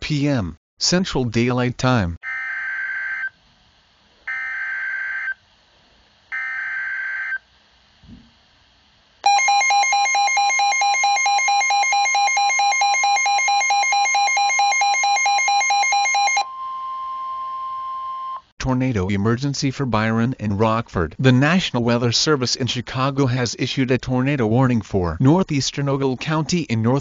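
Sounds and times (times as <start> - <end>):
alert tone with pulsing buzz: 9.3 - 16.5.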